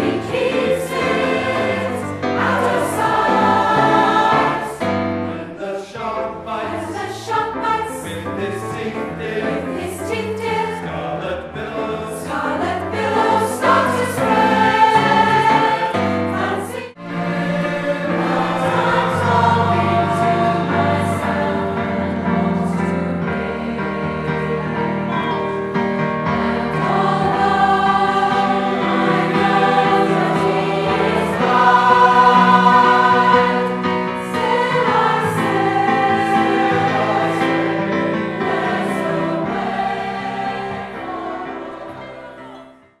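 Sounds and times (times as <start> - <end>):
choir singing held chords: 0.0 - 43.0.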